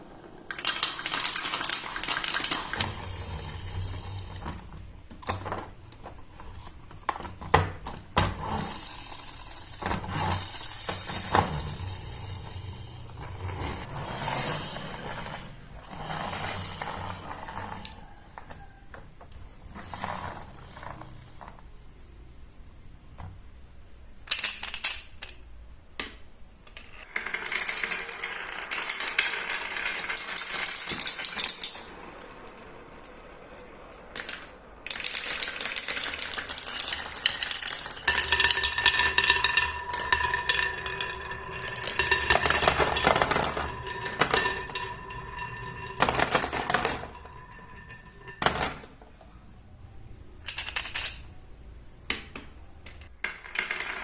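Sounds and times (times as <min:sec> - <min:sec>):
marbles clicking together: 0:00.5 - 0:05.4, 0:08.4 - 0:18.0, 0:27.0 - 0:48.9, 0:50.5 - 0:51.3
marbles rolling down wooden run: 0:00.5 - 0:05.7, 0:06.4 - 0:18.8, 0:19.7 - 0:21.6, 0:27.0 - 0:49.0, 0:53.2 - 0:54.0
steady ringing tone: 0:37.9 - 0:48.6.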